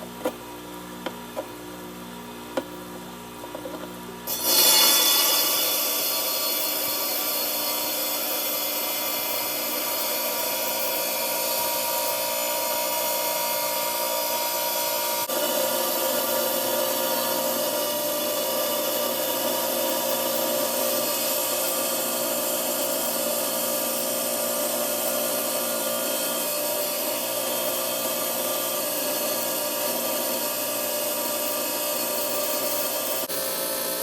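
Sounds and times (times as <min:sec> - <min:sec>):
saw blade grinding rock: 0:04.3 - 0:12.5.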